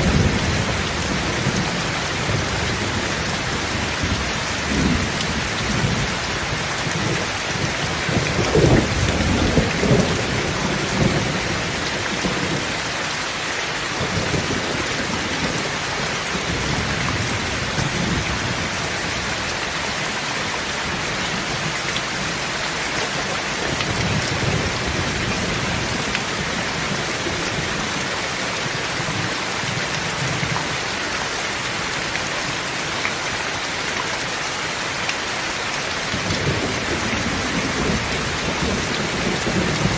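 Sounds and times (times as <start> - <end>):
thunder rumbling: 0.0 - 12.8, 23.1 - 30.6, 36.1 - 39.9
heavy rain falling: 0.0 - 39.9.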